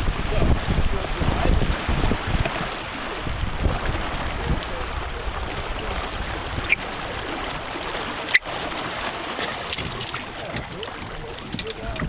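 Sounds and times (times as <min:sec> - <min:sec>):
wind noise: 0:00.0 - 0:09.0
water splashing along hull: 0:00.0 - 0:12.0.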